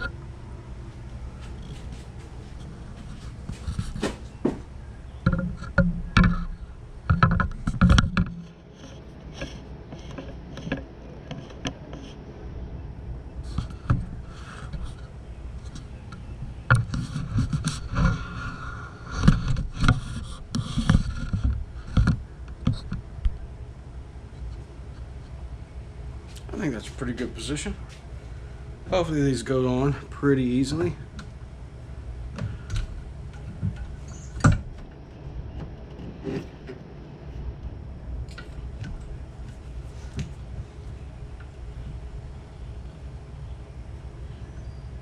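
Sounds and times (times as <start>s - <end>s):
steady low hum: 0.0s - 45.0s
metal part clunks and scraping: 5.2s - 12.1s.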